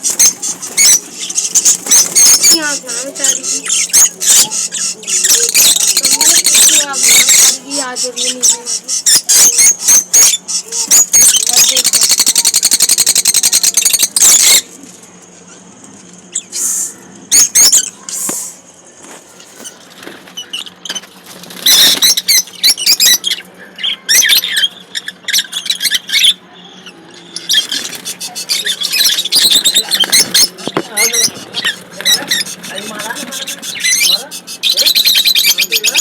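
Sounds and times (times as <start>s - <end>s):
lovebirds chattering and chirping: 0.0s - 36.0s.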